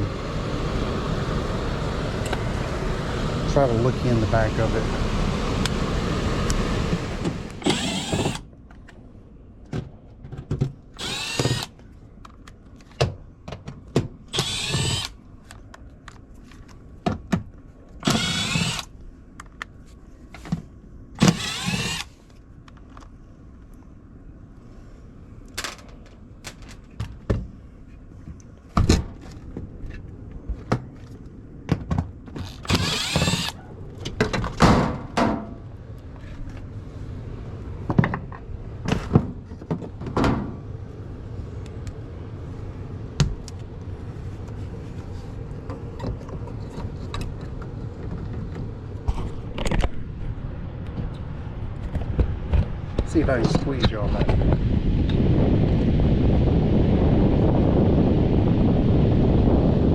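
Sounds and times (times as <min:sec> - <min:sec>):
cordless drill bursts: 0:02.3 - 0:08.4, 0:11.0 - 0:11.7, 0:14.3 - 0:15.2, 0:18.0 - 0:18.9, 0:21.2 - 0:22.2, 0:32.6 - 0:33.6.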